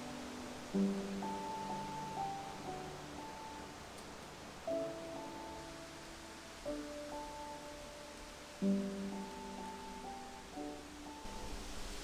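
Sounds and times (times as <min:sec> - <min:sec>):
soft instrumental music: 0:00.0 - 0:12.0.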